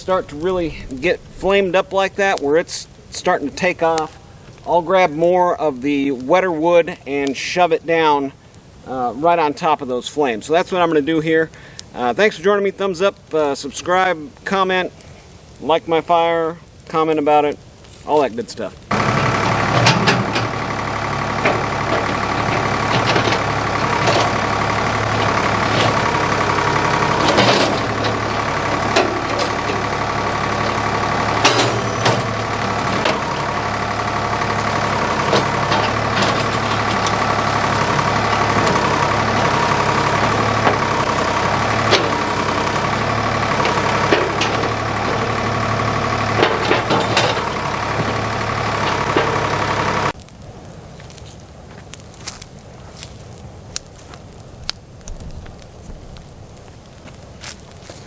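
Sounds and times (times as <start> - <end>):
diesel engine running: 0.0 - 5.8, 18.9 - 50.3
sharp knocks and cracks: 18.8 - 50.4, 51.0 - 58.0.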